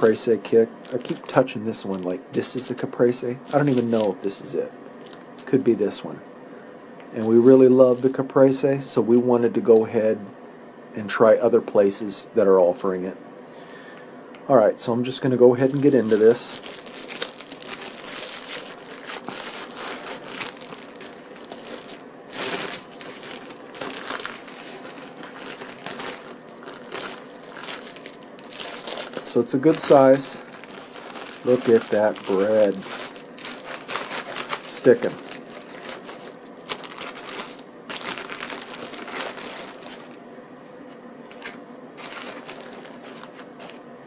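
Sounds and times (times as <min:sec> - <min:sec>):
sandwich wrapper crinkling: 0:15.6 - 0:40.2, 0:41.3 - 0:43.8.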